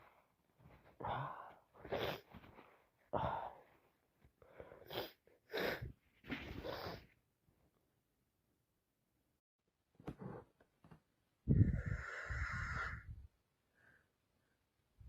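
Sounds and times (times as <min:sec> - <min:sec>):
person sniffling and sneezing: 0:01.1 - 0:03.6, 0:04.6 - 0:07.1.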